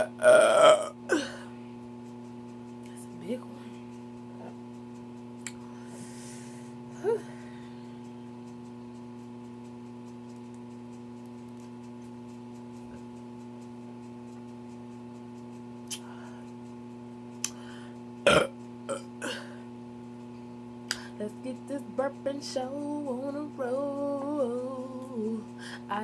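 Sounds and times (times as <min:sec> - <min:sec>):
woman burping: 0:00.0 - 0:01.5, 0:18.3 - 0:19.6
steady electrical hum: 0:00.0 - 0:26.0.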